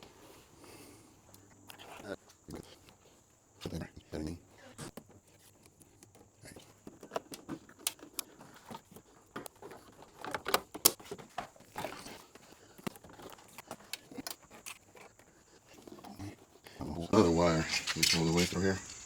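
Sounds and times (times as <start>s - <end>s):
wire harness rustling: 0.0s - 19.0s
cable and plastic clicks: 4.8s - 15.1s.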